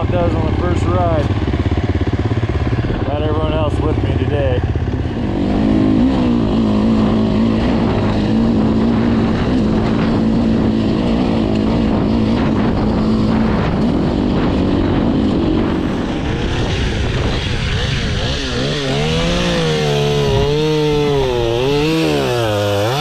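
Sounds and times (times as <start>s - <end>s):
dirt bike engine running: 0.0s - 23.0s.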